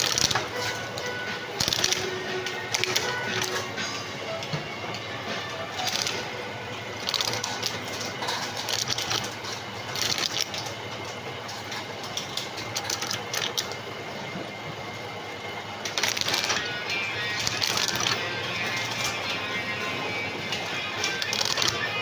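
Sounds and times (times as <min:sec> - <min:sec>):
coconut peeling machine clattering: 0:00.0 - 0:22.0.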